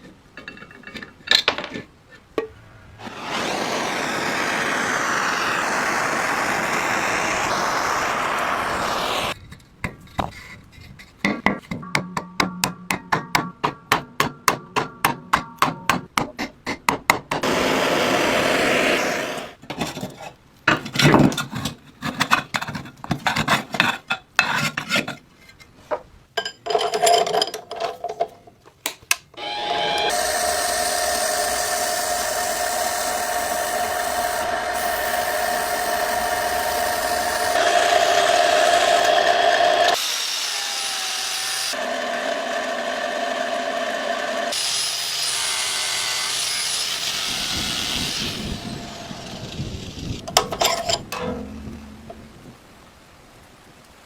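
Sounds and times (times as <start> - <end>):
small power tool running: 3.1 - 9.4, 29.4 - 50.1.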